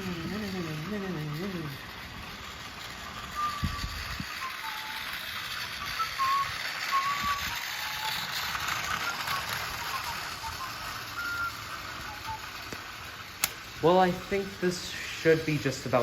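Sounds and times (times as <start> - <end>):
toy train whirring on track: 0.0 - 16.0
small clicks: 11.2 - 13.7.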